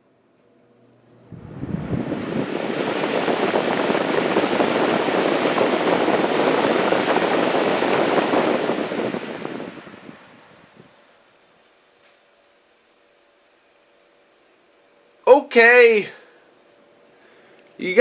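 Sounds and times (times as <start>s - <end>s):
box fan airflow rushing: 1.1s - 11.4s.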